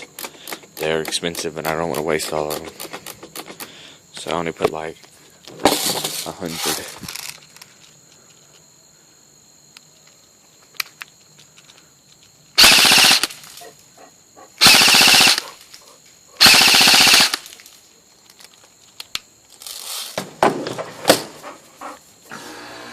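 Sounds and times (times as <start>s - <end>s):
airsoft gun automatic bursts: 12.6s - 13.5s, 14.6s - 15.6s, 16.4s - 17.6s.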